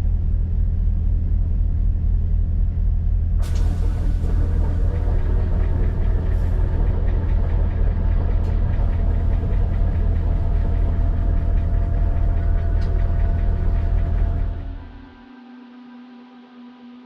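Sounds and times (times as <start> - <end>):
boat engine droning: 3.4 - 15.8.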